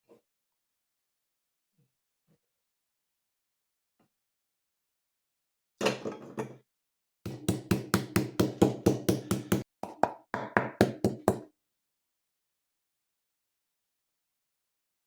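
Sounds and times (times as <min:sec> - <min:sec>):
sharp knocks on hard surface: 0:07.3 - 0:11.5.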